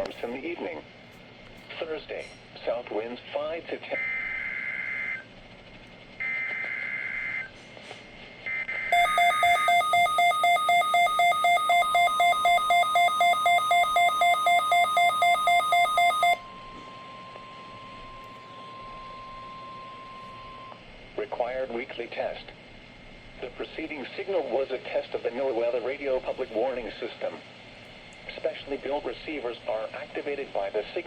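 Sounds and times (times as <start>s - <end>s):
alarm beeping: 8.9s - 16.6s
steady warning alarm tone: 8.9s - 20.7s.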